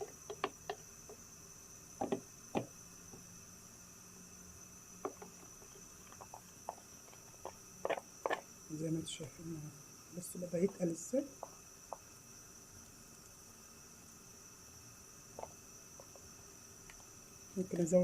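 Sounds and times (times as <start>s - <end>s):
utensil tapping against a bowl: 0.3s - 0.8s.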